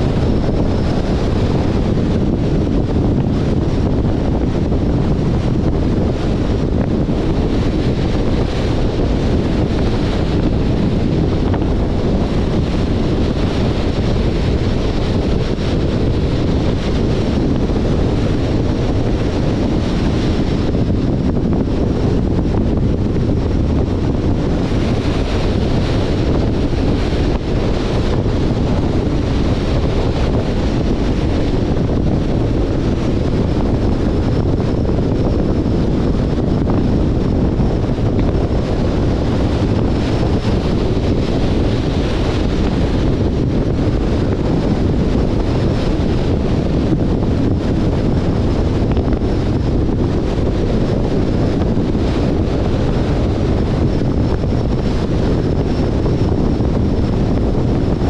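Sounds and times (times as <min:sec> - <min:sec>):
car road noise: 0:00.0 - 0:34.2
wind rushing over microphone: 0:00.0 - 0:58.0.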